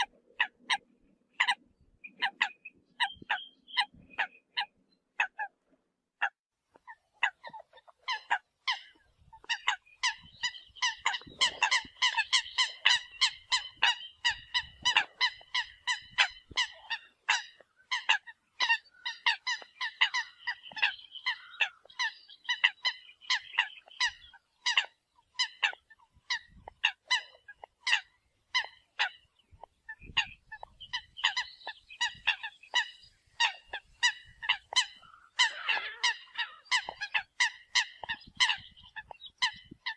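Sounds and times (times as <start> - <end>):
coots honking calls: 7.2 - 29.2, 30.0 - 39.9.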